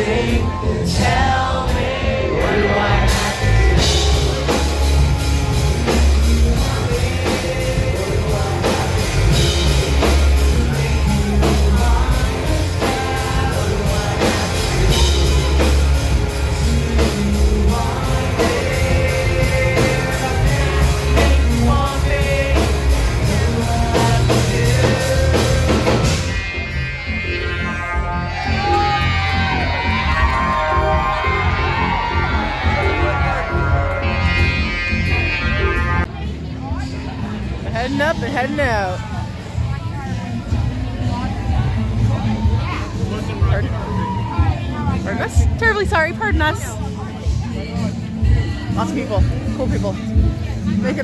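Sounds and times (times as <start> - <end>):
steady drum beat: 0.0 - 27.2, 37.7 - 51.0
heavy bass: 0.0 - 51.0
rock band playing: 0.0 - 51.0
person singing: 5.8 - 26.7.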